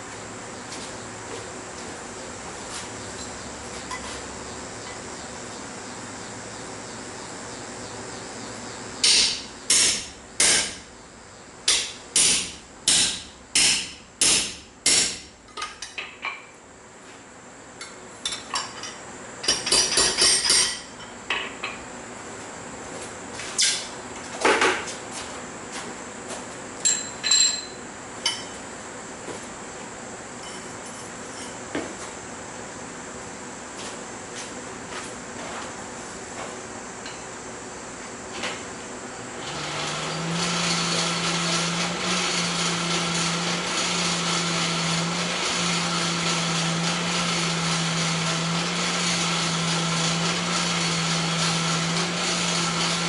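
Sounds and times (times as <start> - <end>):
hammer striking hot steel on anvil: 9.0 - 10.8, 11.7 - 15.3, 19.4 - 21.5.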